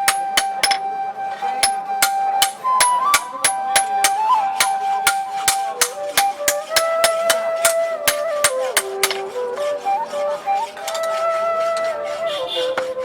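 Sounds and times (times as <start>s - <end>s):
hammer striking metal: 0.0s - 0.9s, 1.6s - 9.2s
flute melody: 0.0s - 13.0s.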